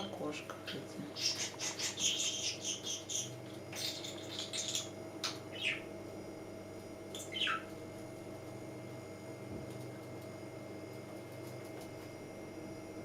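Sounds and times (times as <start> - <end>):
budgerigar chirping and warbling: 0.7 - 5.9, 7.1 - 7.7.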